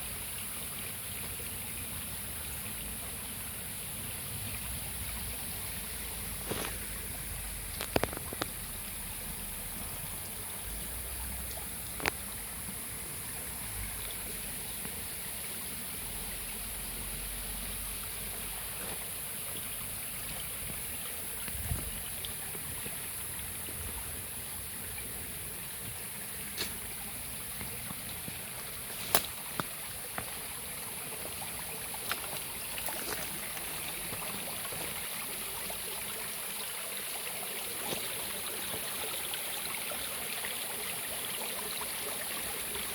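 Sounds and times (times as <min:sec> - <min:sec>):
small stream flowing: 0:00.0 - 0:42.9
sharp clicks or knocks: 0:29.0 - 0:29.7.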